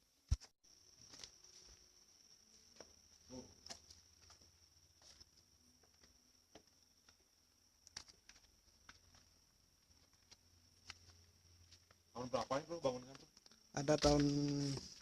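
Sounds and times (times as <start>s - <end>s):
faint clicks and ticks: 12.9s - 14.5s.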